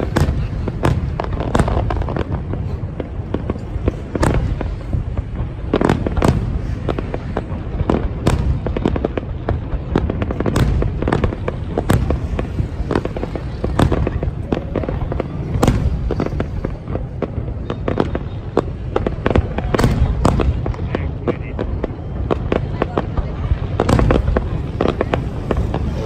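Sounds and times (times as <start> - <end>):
distant explosions rumbling: 0.0 - 26.0
firework bangs: 0.0 - 26.0.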